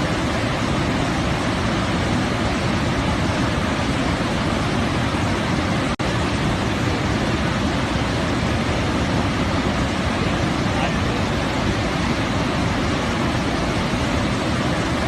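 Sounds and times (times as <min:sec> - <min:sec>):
steady rushing noise: 0:00.0 - 0:15.0.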